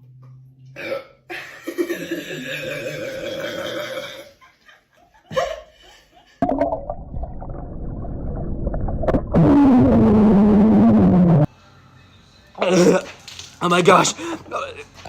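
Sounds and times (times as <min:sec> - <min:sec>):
deep human burps: 0:00.8 - 0:04.4.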